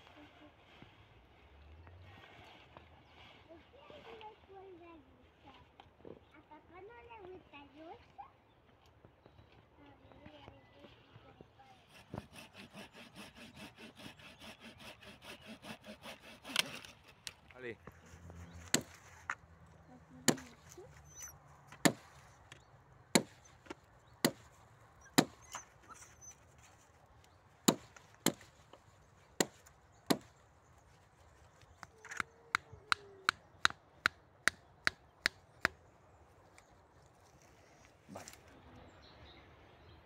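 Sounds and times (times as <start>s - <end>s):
blade chopping wood: 18.6s - 19.4s, 20.2s - 20.6s, 21.7s - 22.2s, 23.1s - 24.5s, 25.2s - 25.4s, 27.6s - 28.7s, 29.4s - 30.3s.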